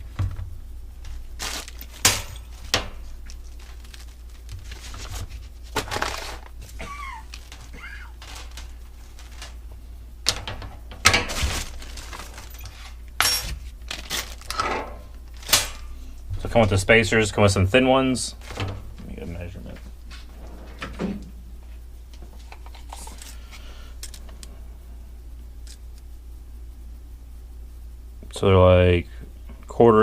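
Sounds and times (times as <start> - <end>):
plastic packaging crinkling: 1.0 - 9.7, 11.2 - 13.1, 13.8 - 15.5.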